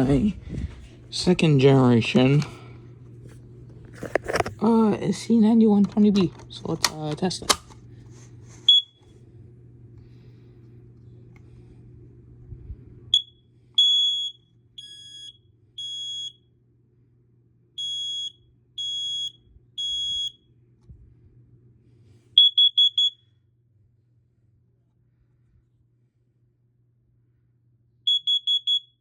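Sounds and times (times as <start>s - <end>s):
alarm chirp: 13.1s - 16.4s, 17.8s - 20.4s, 22.4s - 23.3s, 28.1s - 29.0s
high-pitched alarm beeps: 13.2s - 16.4s, 17.8s - 20.4s, 22.4s - 23.2s, 28.1s - 29.0s.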